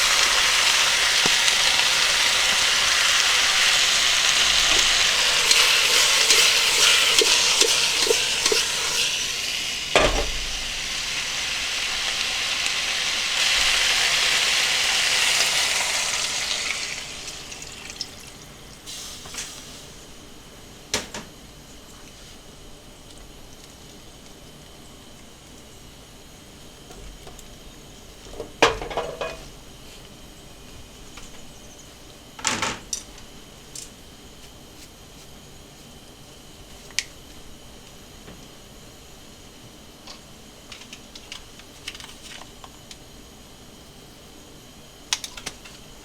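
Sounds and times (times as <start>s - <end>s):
food sizzling in a pan: 0.0s - 20.1s
utensil clinking: 4.5s - 10.2s.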